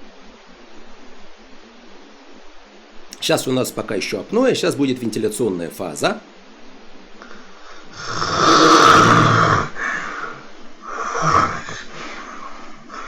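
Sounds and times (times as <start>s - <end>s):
man snoring loudly: 8.0s - 10.0s, 10.9s - 11.9s.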